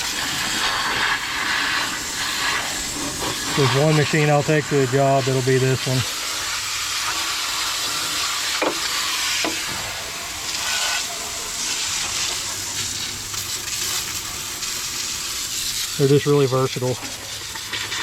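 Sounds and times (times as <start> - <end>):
hose water spraying on metal: 0.0 - 18.0.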